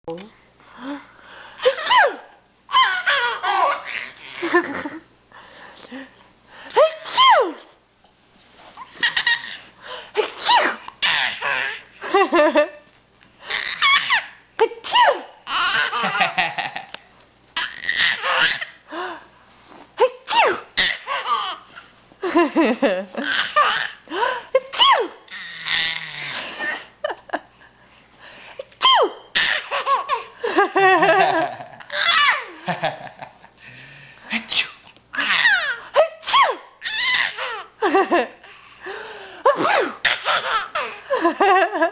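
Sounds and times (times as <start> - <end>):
person sneezing: 1.6 - 2.3, 6.7 - 7.7, 10.0 - 10.9, 14.6 - 15.3, 20.0 - 21.1, 24.3 - 25.2, 28.6 - 29.6, 34.3 - 35.3, 36.0 - 36.7, 39.4 - 40.8
baby giggling: 2.7 - 5.1, 8.8 - 9.7, 15.5 - 17.0, 17.6 - 18.8, 20.8 - 21.8, 23.1 - 24.0, 29.4 - 30.4, 31.0 - 32.6, 40.1 - 41.4.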